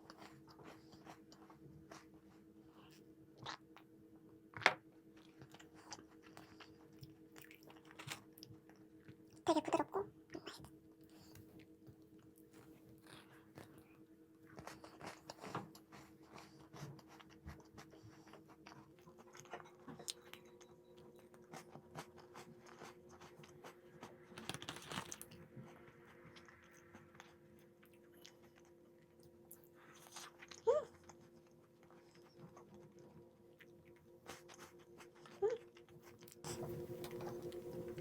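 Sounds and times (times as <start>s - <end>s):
crunching and chewing snacks: 4.5s - 38.0s
steady low hum: 10.2s - 38.0s.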